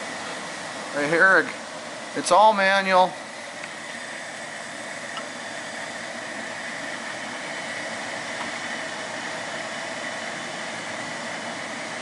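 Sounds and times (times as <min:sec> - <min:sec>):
machine shop hum: 0:00.0 - 0:12.0.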